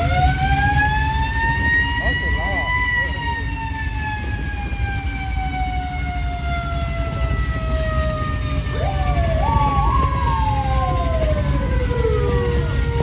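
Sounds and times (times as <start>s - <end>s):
siren climbing in steps: 0.0s - 13.0s
sirens wailing: 0.0s - 13.0s
steady low rumble: 8.5s - 13.0s.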